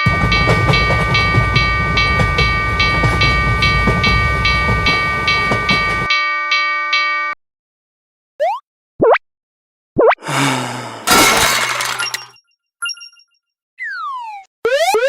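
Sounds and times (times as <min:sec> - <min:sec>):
passing train rumble and clatter: 0:00.0 - 0:06.1
railroad crossing bell ringing: 0:00.0 - 0:06.2.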